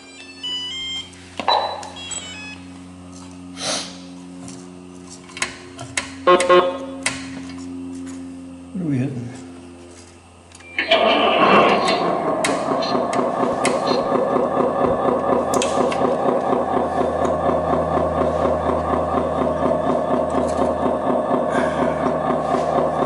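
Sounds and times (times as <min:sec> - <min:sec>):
simulated diesel engine idling: 0:10.7 - 0:23.0.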